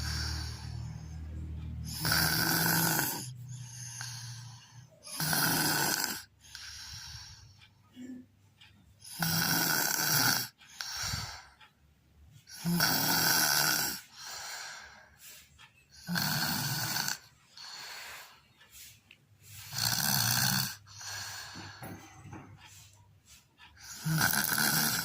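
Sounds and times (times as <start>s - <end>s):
person snoring: 0.0s - 1.2s, 1.8s - 7.4s, 9.0s - 11.5s, 12.5s - 15.0s, 16.0s - 18.4s, 19.6s - 21.8s, 23.8s - 25.0s
quiet breathing: 0.0s - 1.6s, 3.2s - 5.1s, 6.2s - 9.2s, 10.5s - 12.8s, 13.4s - 25.0s.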